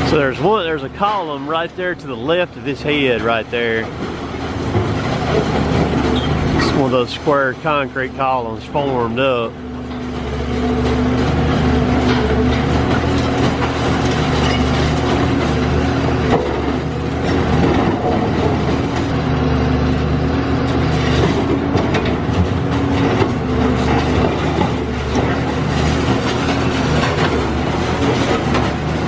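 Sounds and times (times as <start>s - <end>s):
diesel excavator engine running: 0.0s - 29.0s
debris knocking: 2.2s - 7.0s, 20.9s - 29.0s
concrete cracking and crunching: 10.1s - 19.2s, 20.7s - 29.0s.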